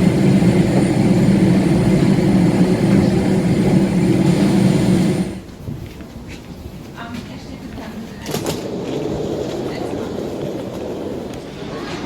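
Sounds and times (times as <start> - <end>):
airliner engine inside cabin: 0.0 - 5.4.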